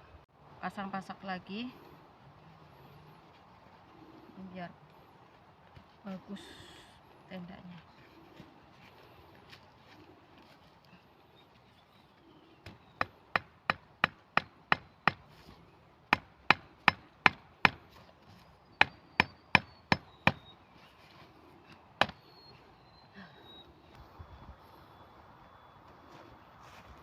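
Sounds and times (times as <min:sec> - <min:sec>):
tent stakes being hammered: 0:12.6 - 0:15.3, 0:16.1 - 0:18.0, 0:18.8 - 0:20.5, 0:22.0 - 0:22.2.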